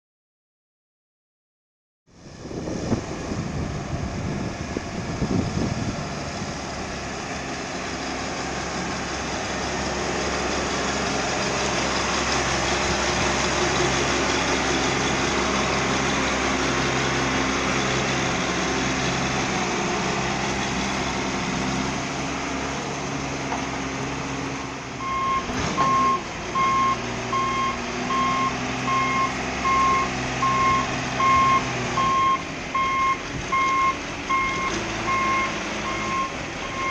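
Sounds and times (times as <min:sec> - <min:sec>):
diesel engine running: 0:02.1 - 0:36.9
reverse alarm beeping: 0:25.0 - 0:36.9.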